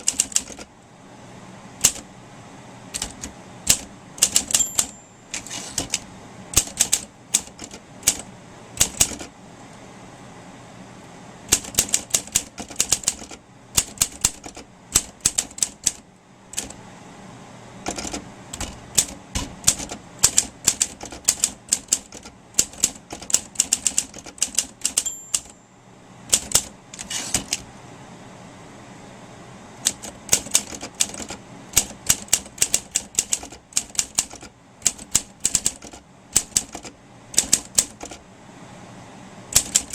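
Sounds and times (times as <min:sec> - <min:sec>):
typewriter key strikes: 0:00.0 - 0:00.7, 0:01.8 - 0:02.0, 0:02.9 - 0:06.0, 0:06.6 - 0:08.2, 0:08.8 - 0:09.3, 0:11.5 - 0:16.8, 0:17.8 - 0:25.6, 0:26.3 - 0:27.6, 0:29.8 - 0:38.2, 0:39.5 - 0:39.9
typewriter margin bell ring: 0:04.3 - 0:05.8, 0:25.0 - 0:25.6.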